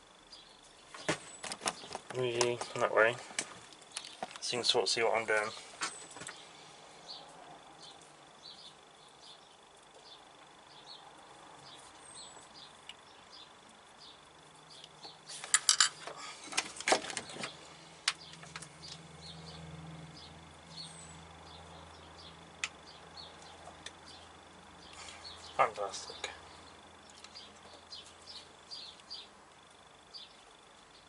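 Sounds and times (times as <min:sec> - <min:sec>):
metal parts and tools clattering: 0:15.4 - 0:17.5
faint high chirp: 0:20.7 - 0:21.2.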